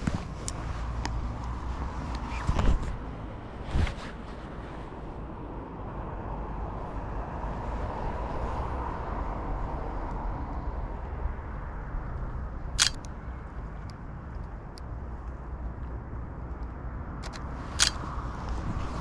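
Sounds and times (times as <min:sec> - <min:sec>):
sharp click: 0:12.8 - 0:13.1, 0:17.8 - 0:18.0.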